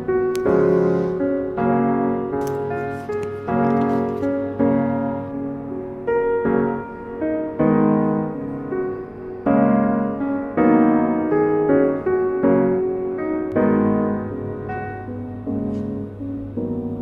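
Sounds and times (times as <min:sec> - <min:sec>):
soft piano chords: 0:00.0 - 0:17.0.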